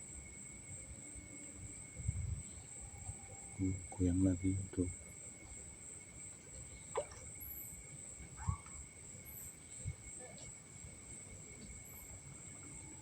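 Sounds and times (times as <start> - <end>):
insect chorus shrilling: 2.4 - 5.0, 6.7 - 10.2.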